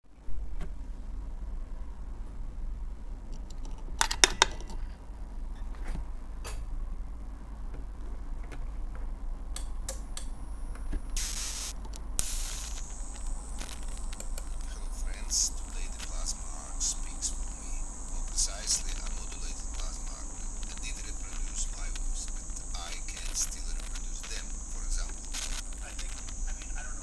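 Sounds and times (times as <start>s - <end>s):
plasma arc crackling: 9.3s - 27.0s
plasma arc humming: 9.5s - 27.0s
plasma arc hissing: 11.1s - 27.0s.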